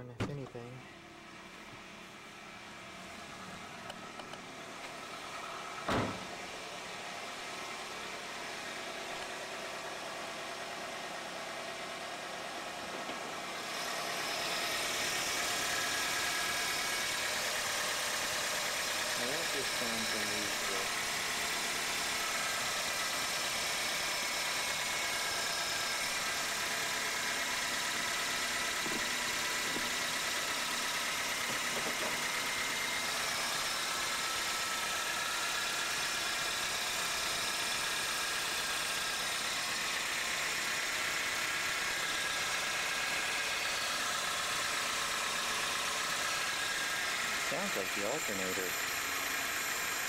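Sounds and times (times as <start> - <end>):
car engine idling: 0.0 - 50.0.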